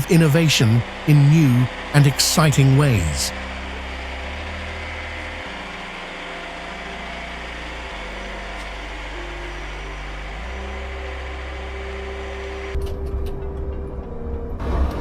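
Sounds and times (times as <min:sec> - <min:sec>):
machine engine humming: 0:01.7 - 0:12.8.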